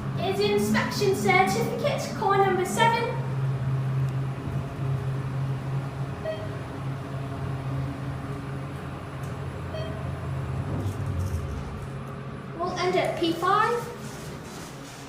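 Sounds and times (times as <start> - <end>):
elevator humming: 0.0 - 15.0
short beeps: 6.2 - 6.6, 9.7 - 10.1.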